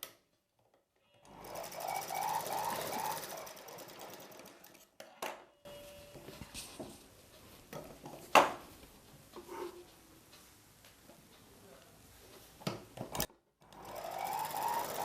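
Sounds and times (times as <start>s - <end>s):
sewing machine stitching: 1.2s - 4.8s, 13.2s - 15.0s.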